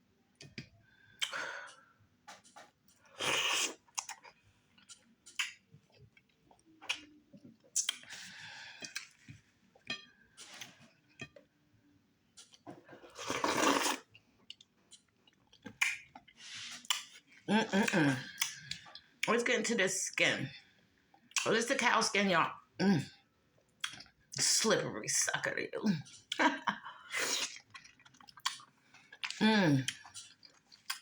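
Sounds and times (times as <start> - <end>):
chewing with wet clicks: 0.4 - 3.1, 3.7 - 11.5, 12.3 - 12.7, 14.1 - 19.4, 23.6 - 24.3, 27.5 - 31.0.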